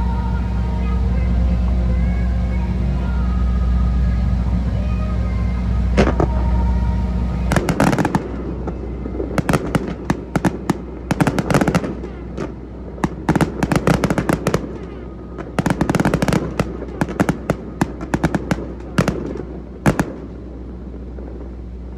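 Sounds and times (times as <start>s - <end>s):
fireworks crackling and popping: 7.2s - 21.8s.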